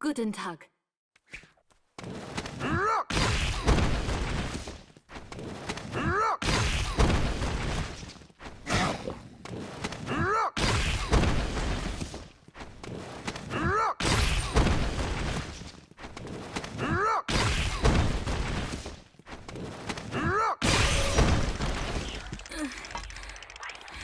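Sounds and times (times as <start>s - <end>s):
loud crunching thud: 3.1s - 4.8s, 10.6s - 12.3s, 14.0s - 15.8s, 17.3s - 22.2s.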